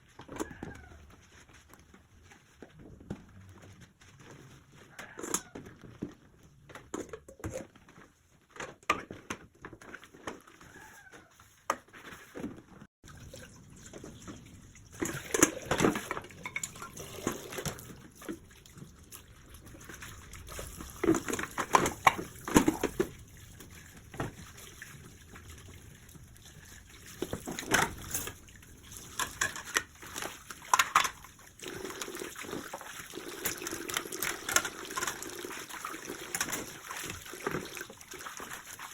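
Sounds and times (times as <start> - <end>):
kitchen items knocking and clinking: 5.0 - 10.6, 13.9 - 18.4, 20.4 - 23.3, 27.2 - 32.6, 33.2 - 38.0
tap water splashing in sink: 13.1 - 38.9.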